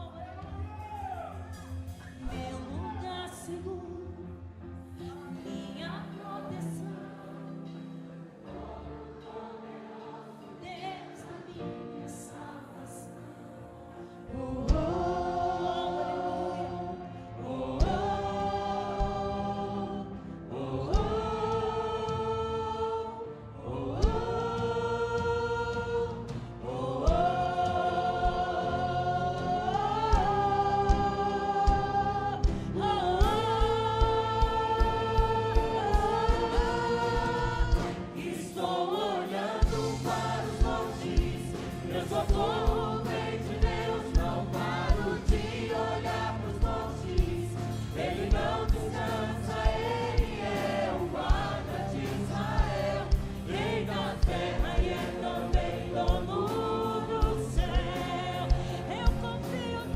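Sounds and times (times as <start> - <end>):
choir singing gospel song: 0.0 - 59.9
instrumental backing: 23.6 - 59.9
drum hits: 39.4 - 56.4.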